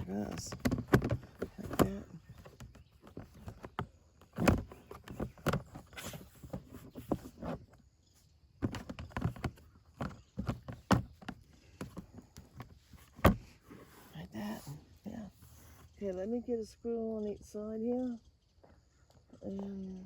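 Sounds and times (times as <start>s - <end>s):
plastic panels knocking and clunking: 0.0s - 7.7s, 8.6s - 13.8s.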